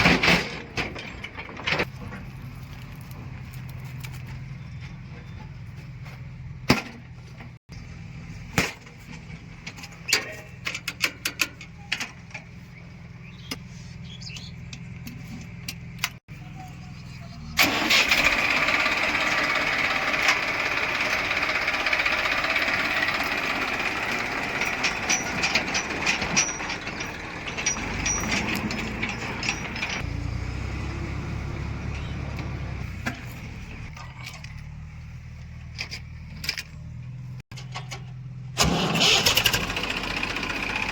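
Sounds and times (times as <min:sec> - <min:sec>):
heavy diesel engine revving: 0:17.4 - 0:33.9, 0:38.6 - 0:40.9.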